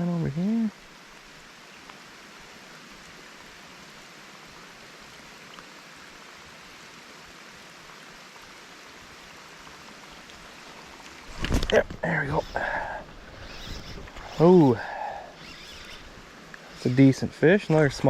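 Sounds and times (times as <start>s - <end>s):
faint ticks: 1.8s - 2.0s, 12.3s - 17.9s
rain hissing: 5.8s - 18.0s.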